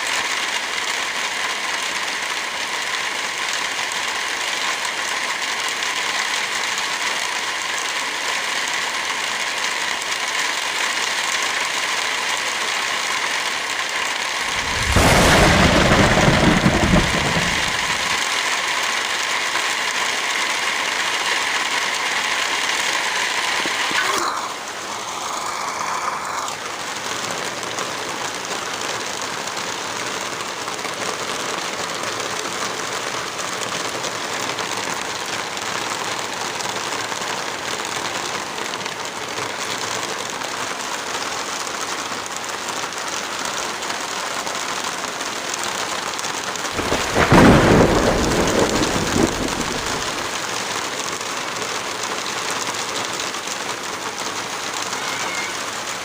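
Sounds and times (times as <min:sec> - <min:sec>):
heavy rain: 0:00.0 - 0:56.0
low rumble: 0:14.5 - 0:18.2.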